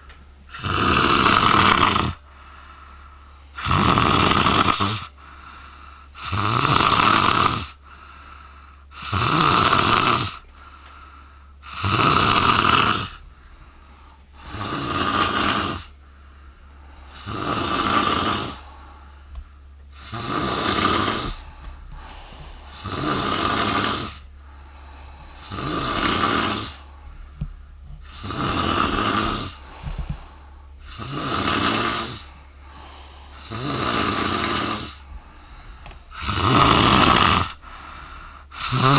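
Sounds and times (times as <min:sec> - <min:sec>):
woman snoring loudly: 0:00.5 - 0:02.3, 0:03.5 - 0:05.2, 0:06.2 - 0:07.8, 0:08.9 - 0:10.4, 0:11.6 - 0:13.2, 0:14.4 - 0:16.0, 0:17.1 - 0:18.9, 0:20.0 - 0:27.0, 0:28.0 - 0:35.1, 0:36.1 - 0:38.9.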